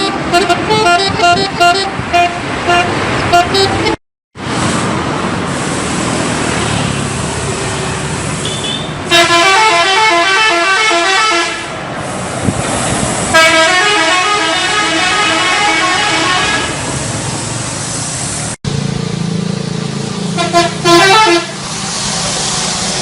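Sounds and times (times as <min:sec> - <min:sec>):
bus musical horn: 0:00.0 - 0:04.0, 0:08.4 - 0:11.8, 0:13.3 - 0:16.9, 0:20.3 - 0:21.6
street and engine noise: 0:00.0 - 0:23.0.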